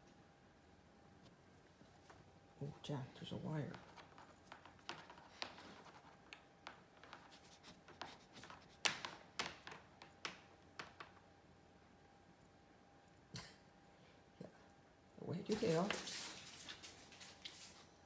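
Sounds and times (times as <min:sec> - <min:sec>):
light clicks and scratches: 0:01.2 - 0:11.3, 0:15.5 - 0:18.0.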